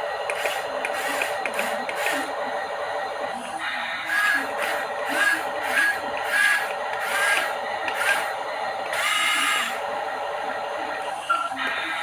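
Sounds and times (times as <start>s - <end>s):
small electric motor whirring: 0.3s - 2.4s, 4.0s - 9.8s.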